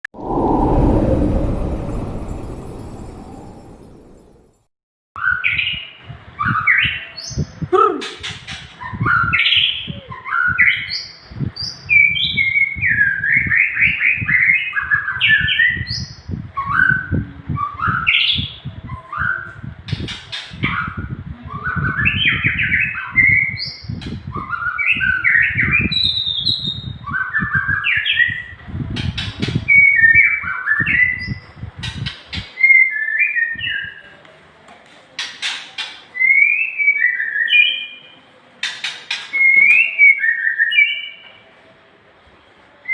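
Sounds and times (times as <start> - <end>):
bird singing whistled notes: 20.7 - 28.5, 39.4 - 41.3.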